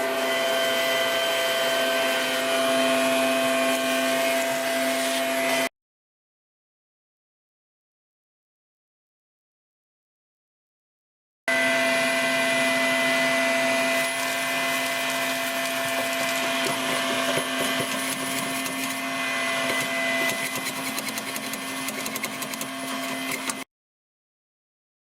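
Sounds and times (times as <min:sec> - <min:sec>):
vacuum cleaner running: 0:00.0 - 0:05.7, 0:11.5 - 0:23.7.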